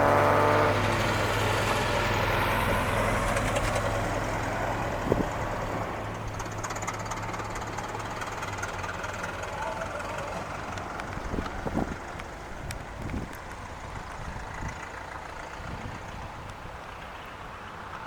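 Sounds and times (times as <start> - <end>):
tractor engine running: 0.0 - 18.0
wind noise: 2.6 - 6.6, 10.9 - 17.6.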